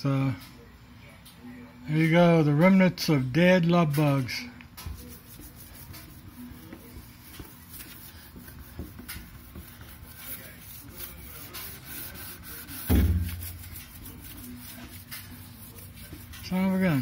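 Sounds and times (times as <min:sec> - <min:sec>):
sheet rubbing on windshield: 0:05.0 - 0:17.0
loud low thud: 0:12.9 - 0:13.4.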